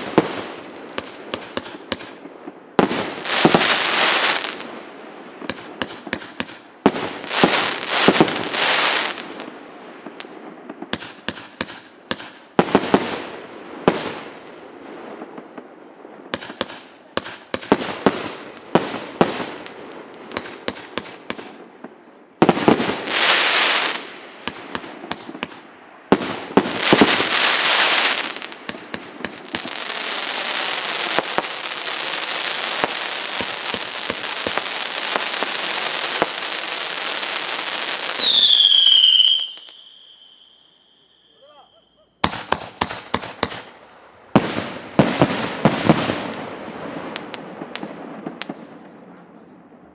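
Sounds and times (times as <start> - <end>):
firework crackling: 0.0 - 15.7, 16.3 - 40.6, 42.2 - 49.2
firework bangs: 0.0 - 40.2, 42.2 - 49.9.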